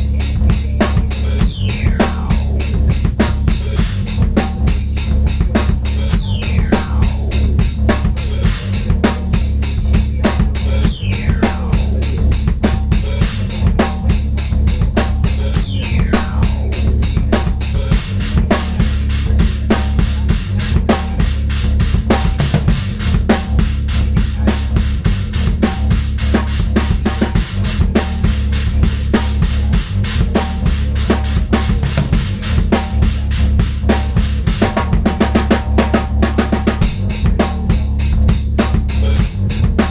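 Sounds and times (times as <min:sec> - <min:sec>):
drum kit improvisation: 0:00.0 - 0:39.9
low sampled drone: 0:00.0 - 0:39.9
falling sampled swoops: 0:01.1 - 0:04.9, 0:05.6 - 0:08.9, 0:15.0 - 0:20.0.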